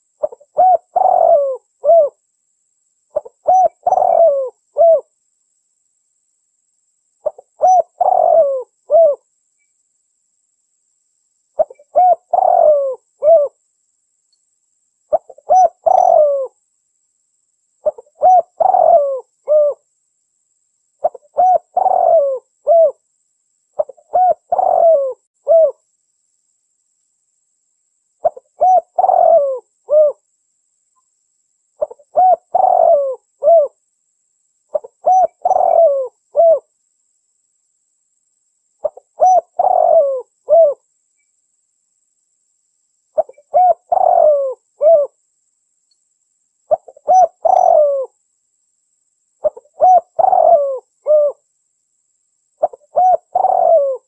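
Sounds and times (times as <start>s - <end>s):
dove cooing: 0.2s - 2.2s, 3.2s - 5.1s, 7.2s - 9.2s, 11.6s - 13.6s, 15.1s - 16.6s, 17.8s - 19.8s, 21.0s - 23.0s, 23.8s - 25.8s, 28.2s - 30.2s, 31.8s - 33.8s, 34.7s - 36.7s, 38.8s - 40.8s, 43.2s - 45.2s, 46.7s - 48.1s, 49.4s - 51.4s, 52.6s - 54.0s.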